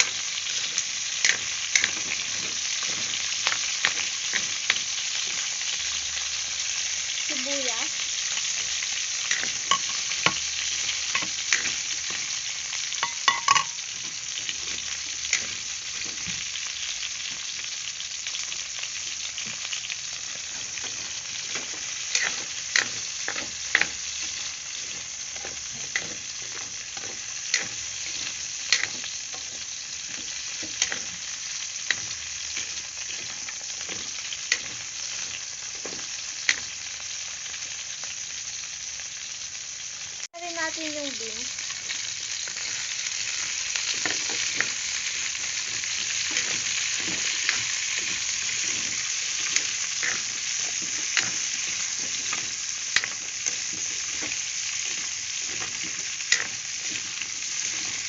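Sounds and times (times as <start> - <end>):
food sizzling in oil: 0.0 - 58.0
utensil scraping a pan: 13.0 - 16.4, 20.5 - 31.2, 45.6 - 58.0.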